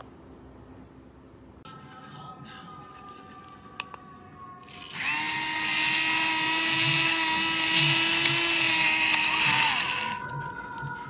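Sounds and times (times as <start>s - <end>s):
electric grinder motor whining: 4.7s - 10.2s.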